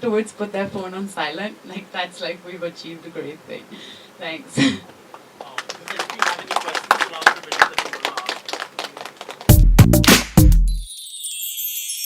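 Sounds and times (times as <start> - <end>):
loud bass-heavy music: 9.5 - 10.9.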